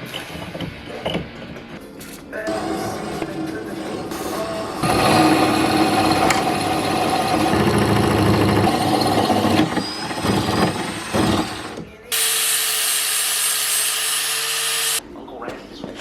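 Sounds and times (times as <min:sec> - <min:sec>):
power tool running on metal: 0:02.5 - 0:15.0
tool whine and hiss: 0:02.5 - 0:15.0.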